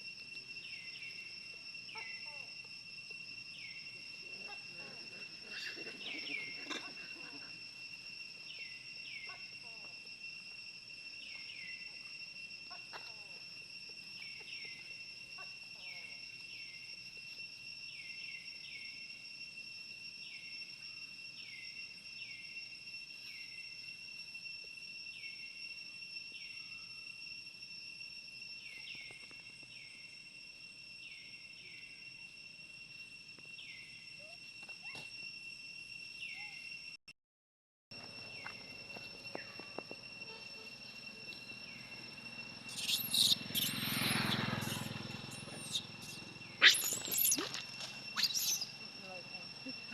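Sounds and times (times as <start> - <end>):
insects droning: 0.0 - 37.1, 37.9 - 49.9
animal call: 1.9 - 2.5, 41.6 - 48.9
short falling chirp: 44.6 - 48.7.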